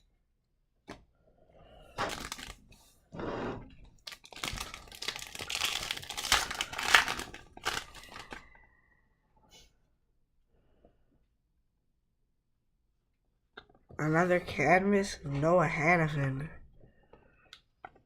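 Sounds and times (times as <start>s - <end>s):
foil wrapper tearing and crinkling: 2.0s - 2.6s, 4.0s - 8.4s.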